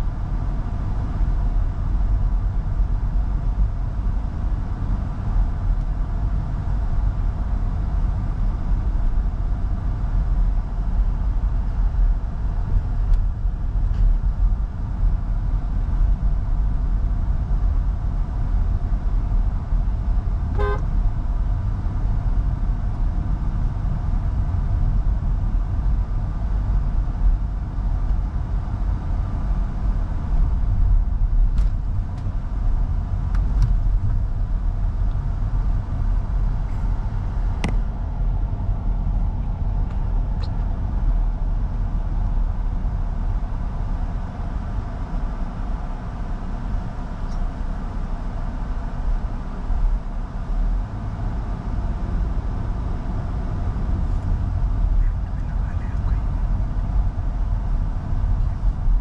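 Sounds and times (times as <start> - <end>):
road and engine rumble: 0.0 - 59.0
car horn toot: 20.5 - 20.9.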